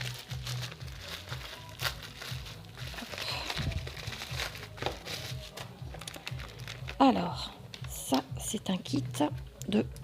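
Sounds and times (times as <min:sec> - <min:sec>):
plastic packaging crinkling: 0:00.0 - 0:07.2
background music with low beat: 0:00.0 - 0:10.0.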